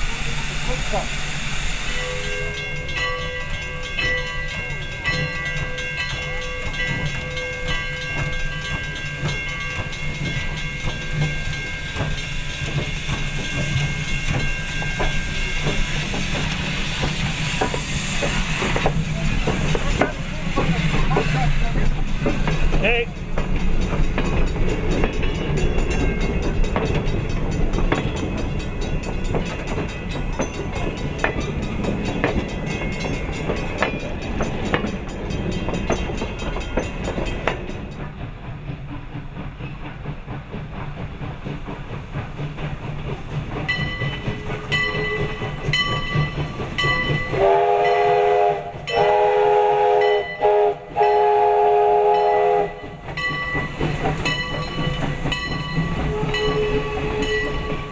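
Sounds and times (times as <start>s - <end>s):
steam locomotive chime whistle: 0.0s - 37.6s, 43.7s - 57.9s
train cars rattling on track: 0.0s - 57.9s
high ringing bell: 1.8s - 16.4s.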